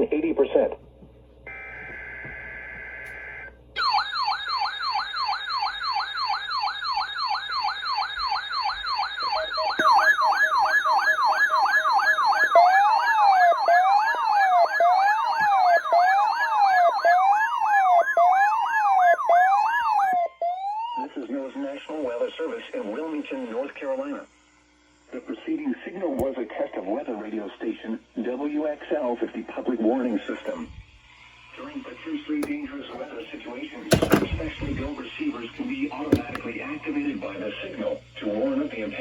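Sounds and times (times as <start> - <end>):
fast whooping siren: 1.5 - 21.4
wailing siren: 1.5 - 21.4
sweeping siren: 1.5 - 23.4
steady alert tone: 9.8 - 14.0.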